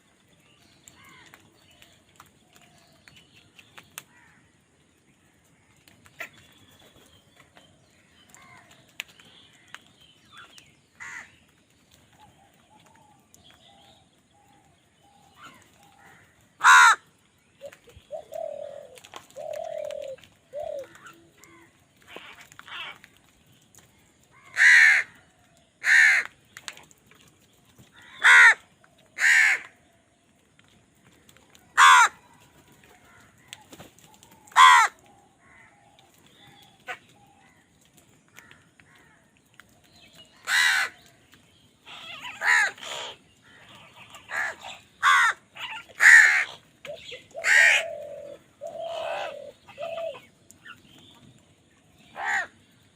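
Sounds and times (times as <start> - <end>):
quieter lower bird calls: 5.8 - 29.8, 31.4 - 52.9
crows cawing harshly: 11.0 - 11.3, 15.4 - 17.1, 24.4 - 25.2, 25.8 - 26.3, 28.0 - 28.6, 29.2 - 29.8, 31.8 - 32.2, 34.5 - 35.8, 40.4 - 41.0, 41.9 - 46.6, 47.4 - 50.2, 52.2 - 52.6.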